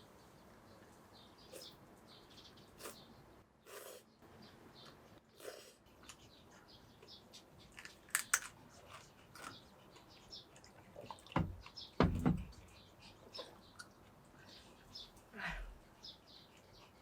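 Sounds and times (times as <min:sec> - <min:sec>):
chewing with small clicks: 0:05.9 - 0:14.4
dull thumps: 0:11.4 - 0:12.6.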